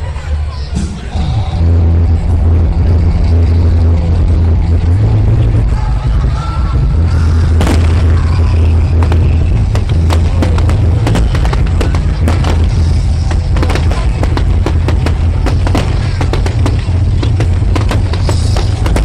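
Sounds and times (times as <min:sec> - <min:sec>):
heavy low rumble: 0:00.0 - 0:19.0
fireworks crackling and banging: 0:07.5 - 0:19.0.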